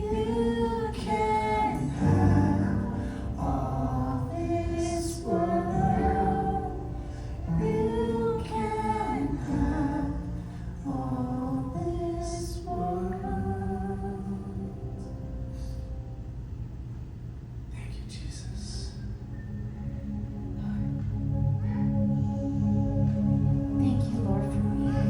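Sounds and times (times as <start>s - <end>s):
voices singing gospel song: 0.0s - 15.1s.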